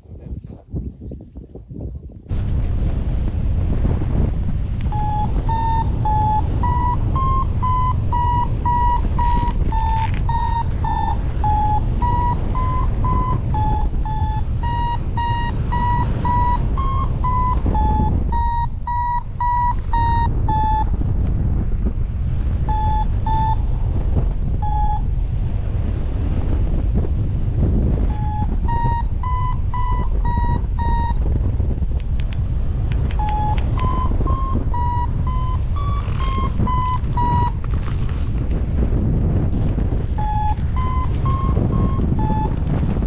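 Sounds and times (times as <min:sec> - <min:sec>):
wind buffeting microphone: 0:00.0 - 0:43.0
variometer short beeps: 0:04.8 - 0:21.0, 0:22.6 - 0:25.1, 0:28.0 - 0:31.9, 0:33.1 - 0:37.8, 0:40.2 - 0:43.0.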